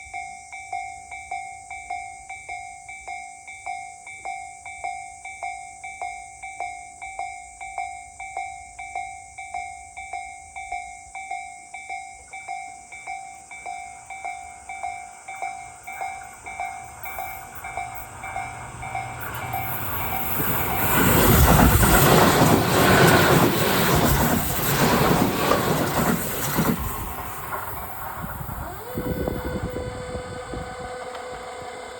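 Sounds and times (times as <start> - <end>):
train wheels on rails: 7.0 - 31.9.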